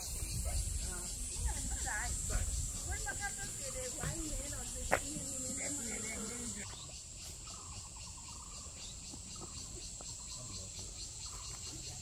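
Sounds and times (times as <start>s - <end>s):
insects chorus pulsing: 0.0s - 12.0s.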